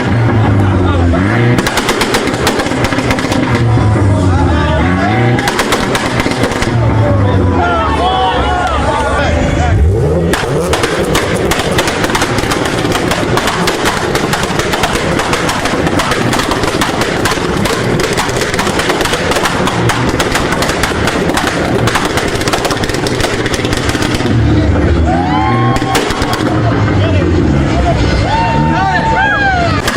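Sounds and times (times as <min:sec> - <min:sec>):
car exhaust pops and bangs: 0:01.3 - 0:03.8, 0:05.4 - 0:06.9, 0:10.3 - 0:24.6, 0:25.8 - 0:26.8.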